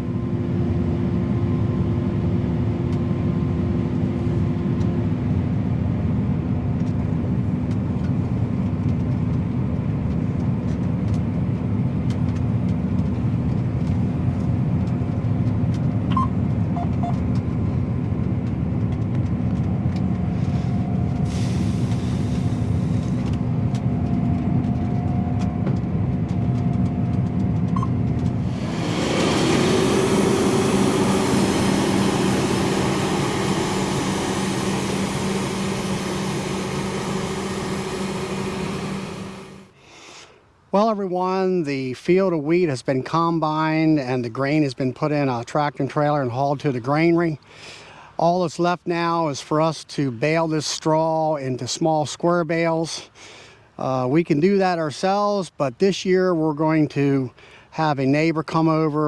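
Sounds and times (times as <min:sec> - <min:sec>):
combine harvester droning: 0:00.0 - 0:40.2
high machine tone: 0:27.7 - 0:39.7.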